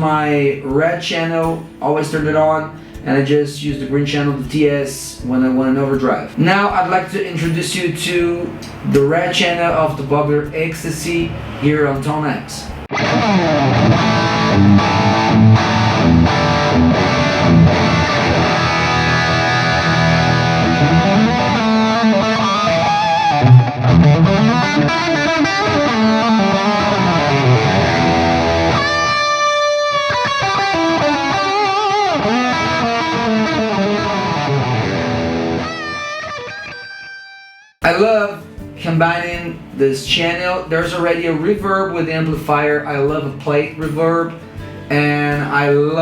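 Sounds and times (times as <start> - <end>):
distorted electric guitar: 10.9 - 37.8.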